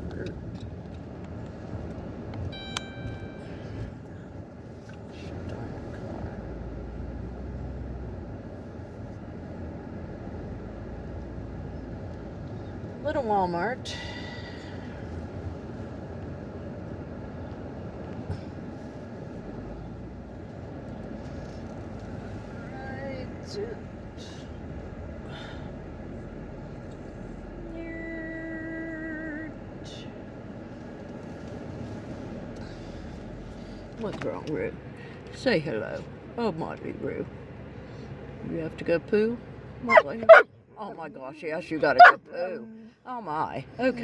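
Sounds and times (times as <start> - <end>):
vehicle cabin rumble: 0.0 - 44.0
short electronic beep: 2.5 - 3.6.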